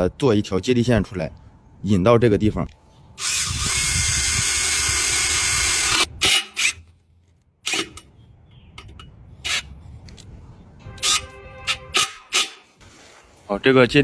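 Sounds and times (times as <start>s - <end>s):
power drill running: 3.2s - 6.7s.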